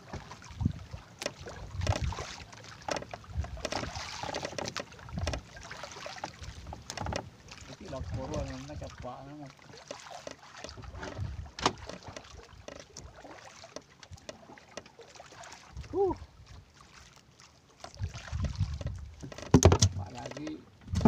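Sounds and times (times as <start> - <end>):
wind on microphone: 0.5 - 2.3, 7.9 - 9.1, 10.8 - 11.6, 18.0 - 19.2
gear knocking and rustling: 2.8 - 5.5
short voice sound: 15.9 - 16.2.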